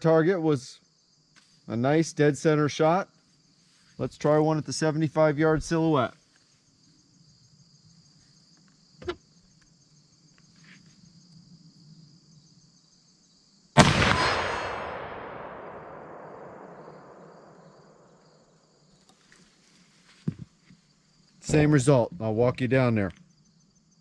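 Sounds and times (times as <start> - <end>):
crickets chirping: 0.0 - 24.0
rifle shot with rumble: 13.8 - 18.2.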